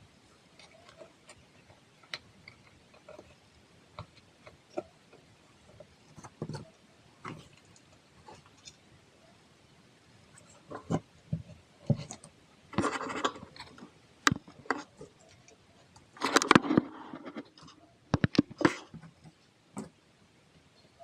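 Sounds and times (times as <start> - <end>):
scraping and rubbing: 0.4 - 8.9, 10.3 - 19.9.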